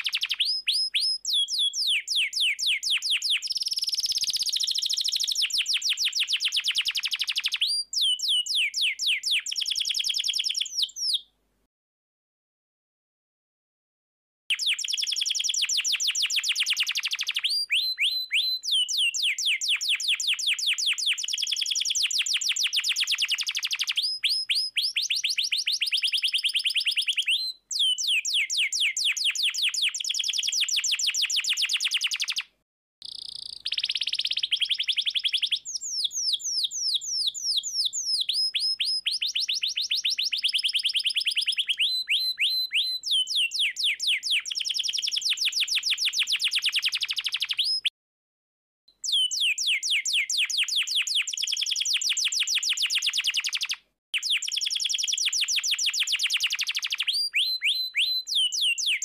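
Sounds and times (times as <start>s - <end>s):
canary singing trills: 0.0s - 11.2s, 14.5s - 47.9s, 49.0s - 59.0s.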